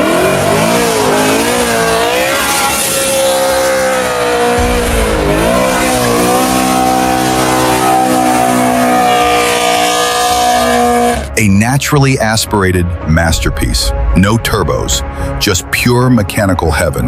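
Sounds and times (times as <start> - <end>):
car engine revving hard: 0.0 - 11.3.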